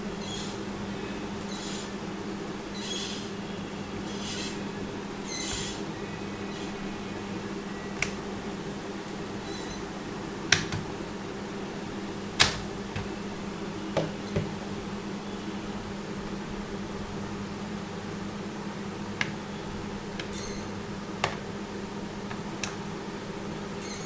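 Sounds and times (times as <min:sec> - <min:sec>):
steady low hum: 0:00.0 - 0:23.8
sharp clicks handling laptop: 0:10.5 - 0:10.9.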